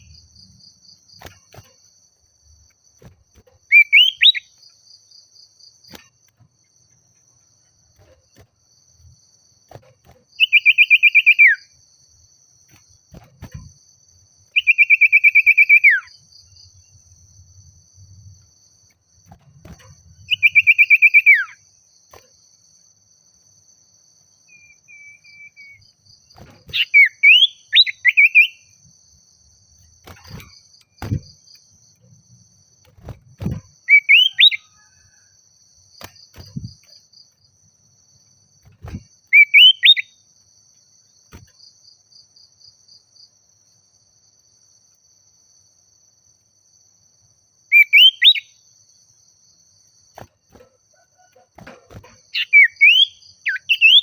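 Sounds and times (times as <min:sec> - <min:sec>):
faint high insect trill: 0:00.0 - 0:54.0
bird singing trilled whistles: 0:03.7 - 0:04.5, 0:10.4 - 0:11.7, 0:14.5 - 0:16.1, 0:20.2 - 0:21.6, 0:24.5 - 0:25.8, 0:26.8 - 0:28.7, 0:33.9 - 0:35.1, 0:39.3 - 0:40.2, 0:47.7 - 0:48.6, 0:52.4 - 0:54.0.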